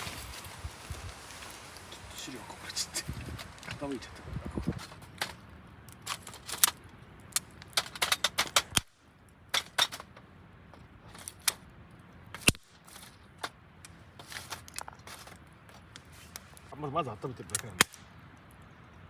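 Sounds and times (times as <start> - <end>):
hard objects clicking and knocking: 4.6 - 8.9, 9.5 - 11.6.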